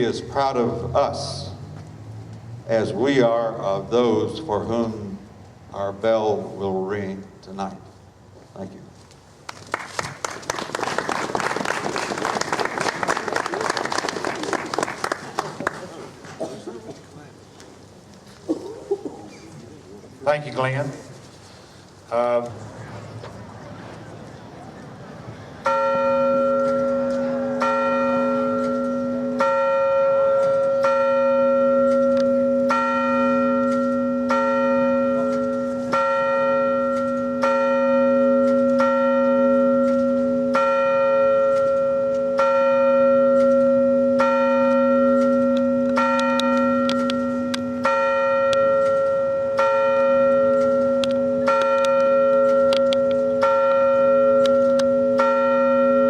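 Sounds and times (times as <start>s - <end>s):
bell tolling slowly: 25.6s - 56.0s.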